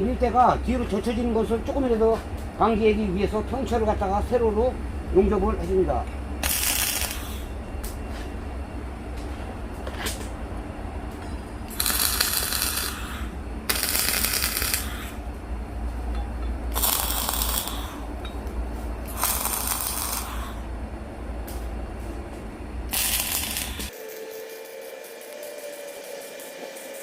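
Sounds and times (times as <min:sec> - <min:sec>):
steady low hum: 0:00.0 - 0:27.0
arc welding crackling: 0:06.4 - 0:08.0, 0:11.6 - 0:15.2, 0:16.7 - 0:18.0, 0:19.1 - 0:20.5, 0:22.9 - 0:27.0.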